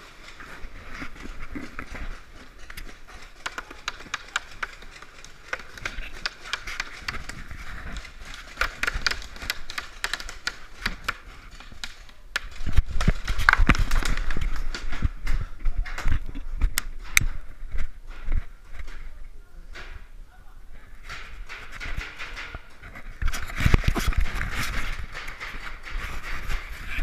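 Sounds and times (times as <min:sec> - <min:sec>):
paintball markers firing: 0:03.2 - 0:14.4.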